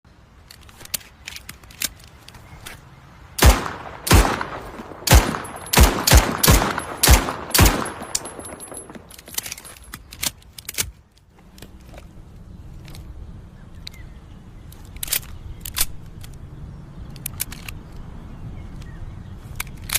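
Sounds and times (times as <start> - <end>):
pistol shots: 3.4 - 9.2
metallic clicks: 3.4 - 12.0, 14.7 - 16.4, 17.0 - 18.1.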